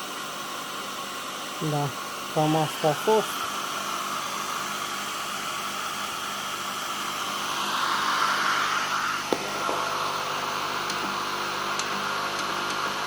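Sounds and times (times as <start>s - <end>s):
fan-like whir: 0.8s - 13.0s.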